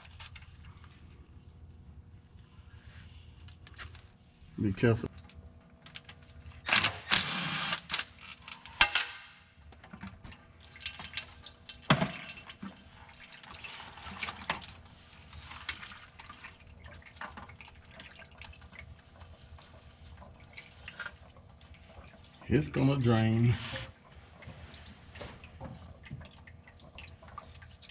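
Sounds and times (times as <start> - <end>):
fluid dripping into a pan: 10.6 - 13.6.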